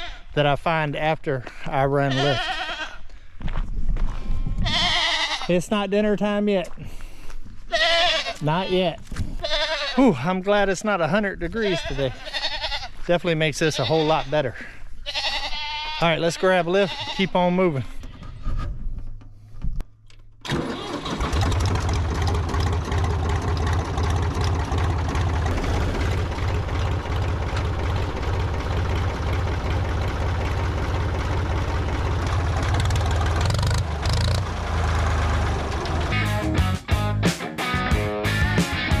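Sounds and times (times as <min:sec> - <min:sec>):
diesel tractor engine starting: 0:20.4 - 0:39.0.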